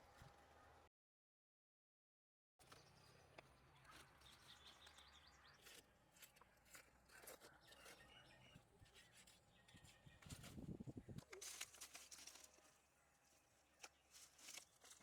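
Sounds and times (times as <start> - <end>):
faint bird chirps: 2.6 - 5.8.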